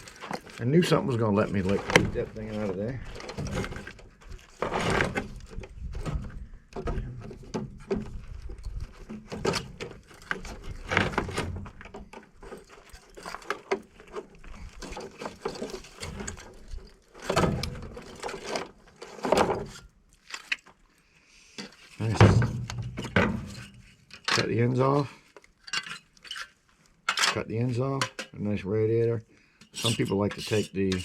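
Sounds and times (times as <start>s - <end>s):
metal knocks clanks and rattles: 1.2s - 19.8s, 22.0s - 25.0s.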